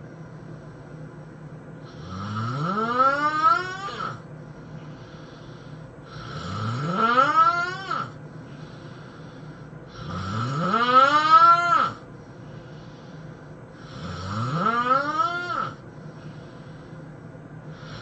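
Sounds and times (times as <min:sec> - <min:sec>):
man snoring loudly: 0:01.9 - 0:04.2, 0:06.1 - 0:08.2, 0:09.9 - 0:12.0, 0:13.8 - 0:15.8, 0:17.7 - 0:18.0.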